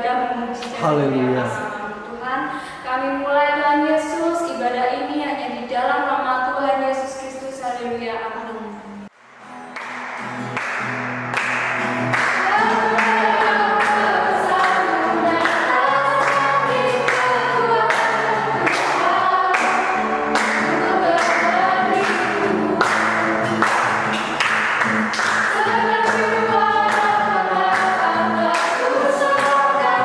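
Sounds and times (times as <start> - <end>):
musical accompaniment with beat: 9.2 - 15.5
group singing a worship song: 12.1 - 30.0.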